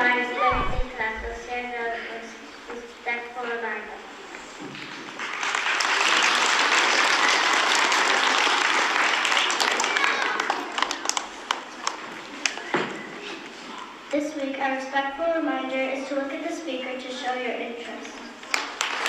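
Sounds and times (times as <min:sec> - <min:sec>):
audience applauding: 0:05.2 - 0:11.6, 0:18.5 - 0:19.0.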